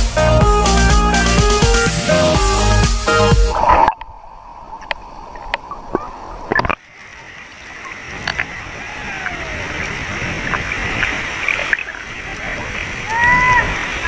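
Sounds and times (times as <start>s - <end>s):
steady rushing noise: 0.0s - 14.0s
water splashing and sloshing: 3.4s - 14.0s.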